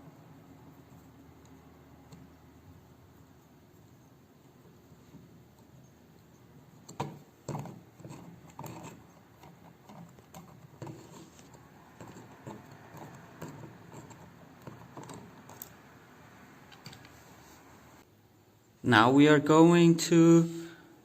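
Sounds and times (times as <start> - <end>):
screwdriver clicking and scraping: 6.8 - 15.9, 16.7 - 17.2.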